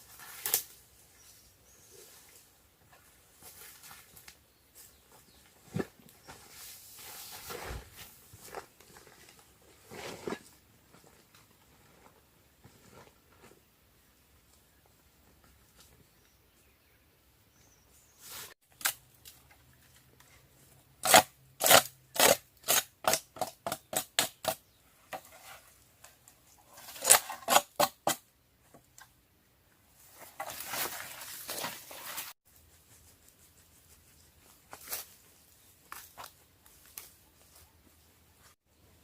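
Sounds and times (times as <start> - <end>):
scraping rustling noise: 0.0 - 13.7, 25.1 - 27.5, 29.9 - 38.6.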